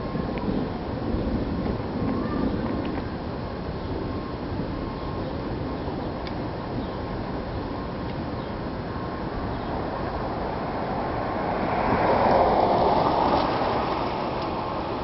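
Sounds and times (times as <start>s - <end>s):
street noise: 0.0s - 15.0s
vehicle passing by: 9.8s - 15.0s.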